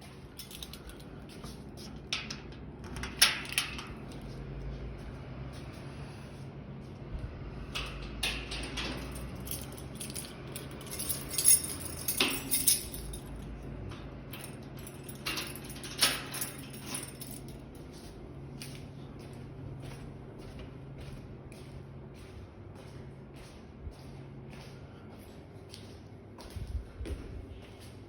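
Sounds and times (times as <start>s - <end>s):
low steady hum: 0.0s - 28.0s
household clinks and knocks: 7.7s - 17.7s.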